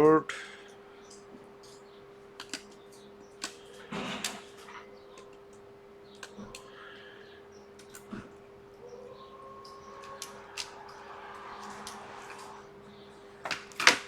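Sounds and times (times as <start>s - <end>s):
steady electrical hum: 0.0s - 14.0s
light clicks of small parts: 0.3s - 7.1s, 7.8s - 8.3s, 9.6s - 12.6s.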